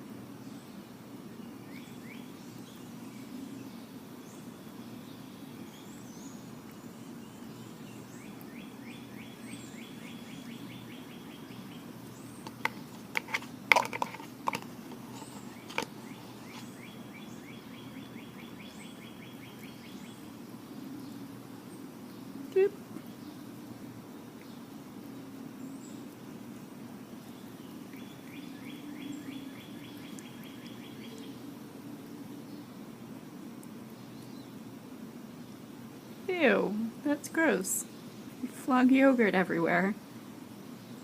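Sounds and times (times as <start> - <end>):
faint rapid bird trill: 0.4 - 14.2, 15.0 - 23.6, 27.0 - 31.5.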